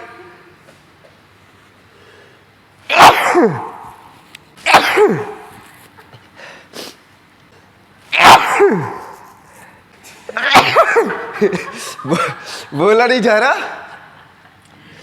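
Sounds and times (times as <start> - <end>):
man sneezing: 2.9 - 5.6, 8.1 - 9.4, 10.1 - 12.7.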